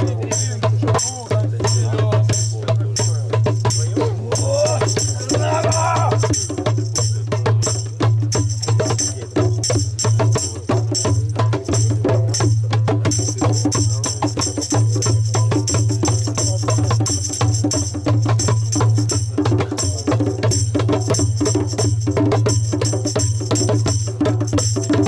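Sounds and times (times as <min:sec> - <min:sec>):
high jingling: 0:00.0 - 0:10.2
fast dense percussion: 0:00.0 - 0:25.0.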